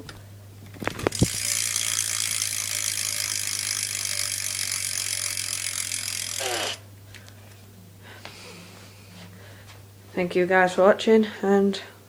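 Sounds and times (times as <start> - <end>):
bicycle hub freewheeling: 1.0 - 6.8.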